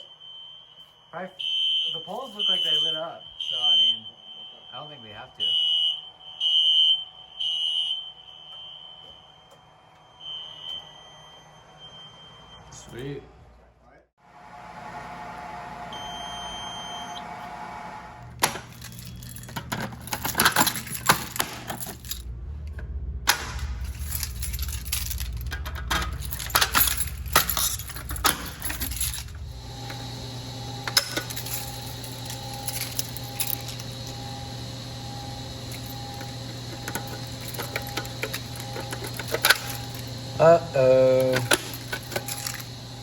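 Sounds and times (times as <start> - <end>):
alarm panel buzzer tone: 0.0 - 12.9, 14.3 - 19.5, 26.2 - 43.0
low hum: 14.3 - 43.0
metallic clinking: 18.4 - 22.3, 23.5 - 42.9.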